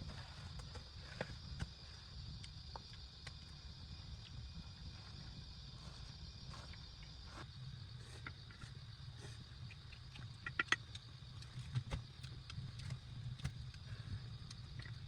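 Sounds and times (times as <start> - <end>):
crickets droning: 0.0 - 15.0
sharp clicks and light knocks: 9.7 - 13.9.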